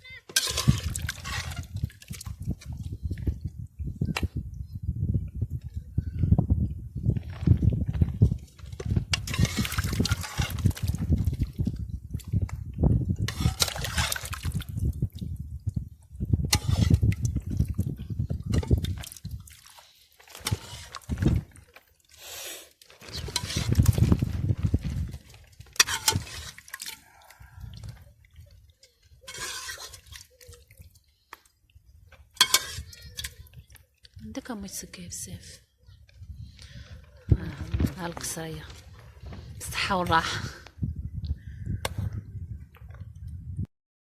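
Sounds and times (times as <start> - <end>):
broth pouring and sloshing: 0.4 - 2.7, 8.6 - 11.8, 13.3 - 15.4, 16.5 - 31.2.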